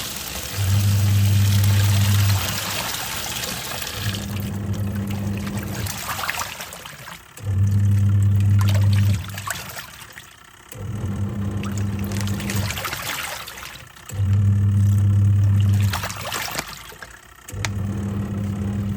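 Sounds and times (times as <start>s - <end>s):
water churning and sloshing: 0.0s - 14.5s, 15.4s - 18.9s
washing machine motor humming: 0.0s - 18.9s.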